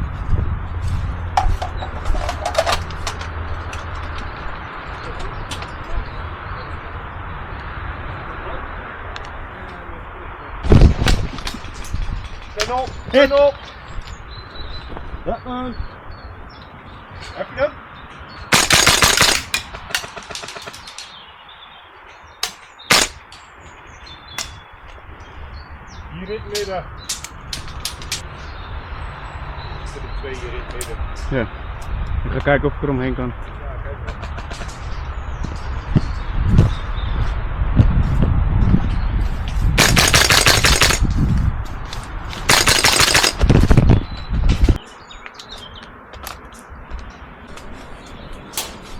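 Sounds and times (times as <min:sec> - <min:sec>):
airsoft rifle firing: 0:18.5 - 0:20.8, 0:22.4 - 0:23.2, 0:39.8 - 0:41.0, 0:42.5 - 0:43.6.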